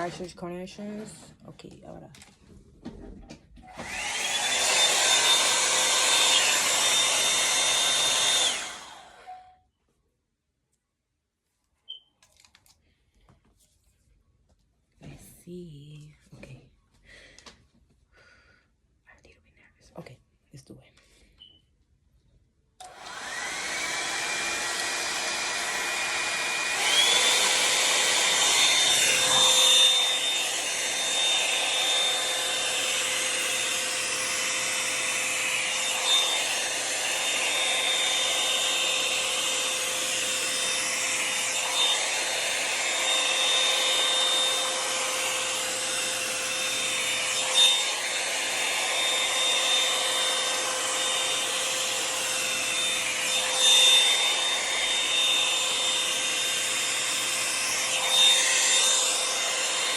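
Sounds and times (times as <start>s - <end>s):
hair dryer brush whine: 0.0s - 1.1s, 3.6s - 9.5s, 22.8s - 59.9s.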